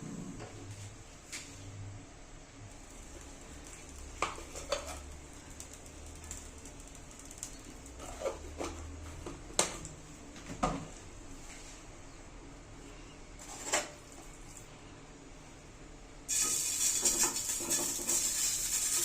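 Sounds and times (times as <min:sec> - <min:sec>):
faint low hum: 0:00.0 - 0:13.4
utensils and dishes clinking: 0:16.3 - 0:19.0.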